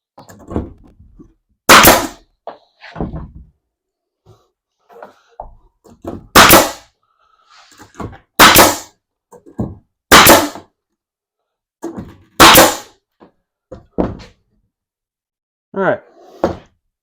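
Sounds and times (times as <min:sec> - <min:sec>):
nail gun firing into plywood: 0:01.7 - 0:02.2, 0:06.3 - 0:06.9, 0:08.4 - 0:09.0, 0:10.1 - 0:10.7, 0:12.4 - 0:13.0.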